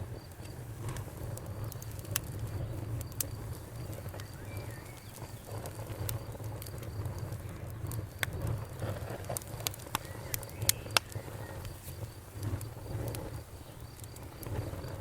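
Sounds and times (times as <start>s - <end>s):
campfire crackling: 0.0s - 15.0s
low rumble of flames: 0.0s - 15.0s.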